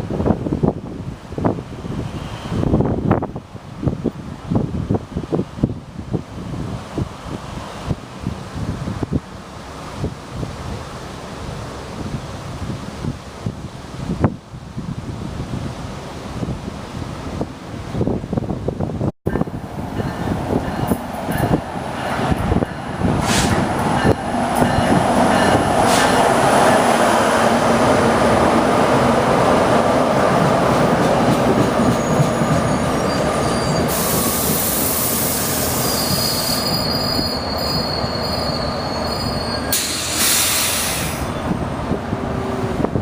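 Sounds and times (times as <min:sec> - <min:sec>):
train wheels rumbling on rails: 0:16.4 - 0:43.0
high wheel squeal: 0:31.8 - 0:41.4
high hiss bursts: 0:33.8 - 0:37.0, 0:39.6 - 0:41.4.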